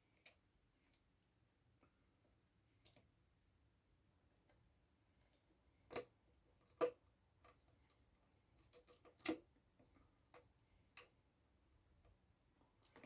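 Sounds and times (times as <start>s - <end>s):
faint clicks and taps of small tools: 8.6s - 11.2s.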